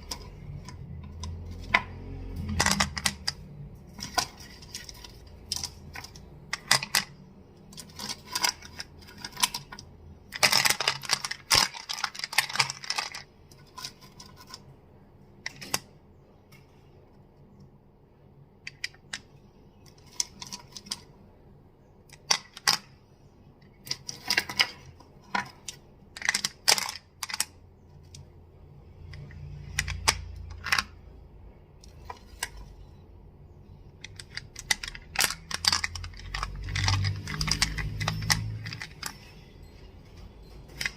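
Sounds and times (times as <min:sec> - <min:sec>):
crystals clicking together: 0:34.0 - 0:39.3.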